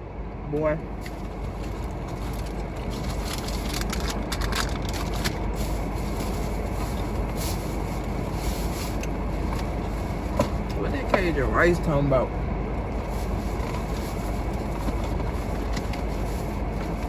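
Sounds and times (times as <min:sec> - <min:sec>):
rumble inside car: 0:00.5 - 0:17.0.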